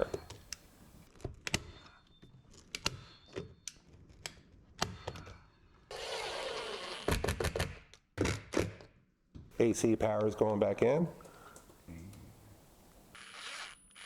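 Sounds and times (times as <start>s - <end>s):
steady hiss: 11.0s - 13.2s.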